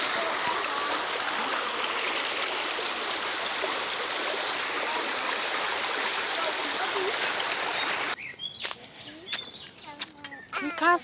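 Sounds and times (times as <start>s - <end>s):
stream water running: 0.0s - 8.2s.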